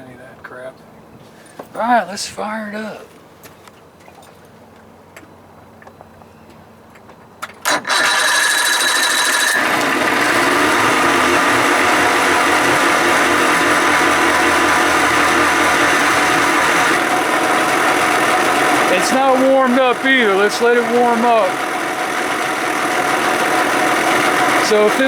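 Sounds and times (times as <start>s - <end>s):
outboard motor starting and idling: 7.6s - 25.0s.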